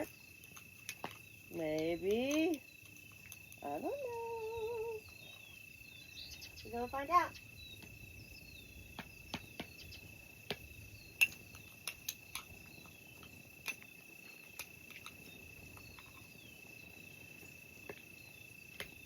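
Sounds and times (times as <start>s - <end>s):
campfire popping and crackling: 0.0s - 3.6s, 7.4s - 19.0s
crickets trilling: 0.0s - 19.0s.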